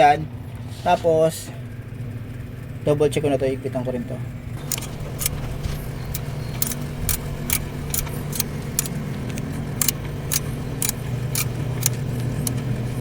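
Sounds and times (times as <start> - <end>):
steady low hum: 0.0 - 13.0
socket wrench ratcheting: 4.6 - 5.4, 6.1 - 12.6.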